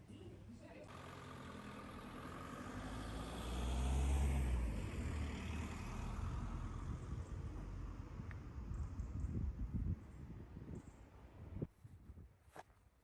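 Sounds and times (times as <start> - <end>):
motor vehicle passing by: 0.9 - 9.0.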